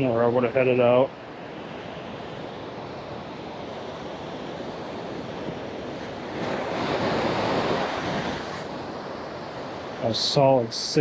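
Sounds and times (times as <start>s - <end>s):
surf breaking on beach: 0.0s - 11.0s
wind on microphone: 1.5s - 10.2s.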